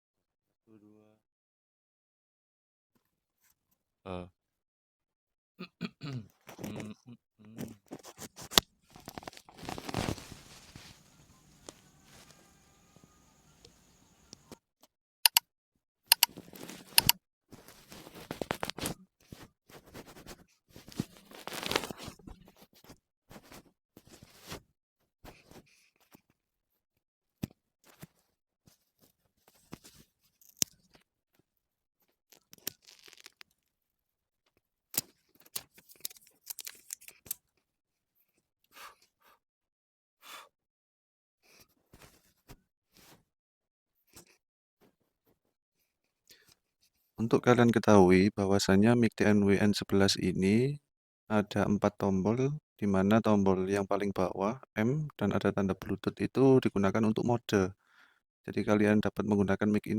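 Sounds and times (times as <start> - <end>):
scraping and tearing: 7.9 - 12.8, 16.3 - 19.0, 20.8 - 22.1, 32.4 - 33.4
sharp clicks: 16.1 - 17.2.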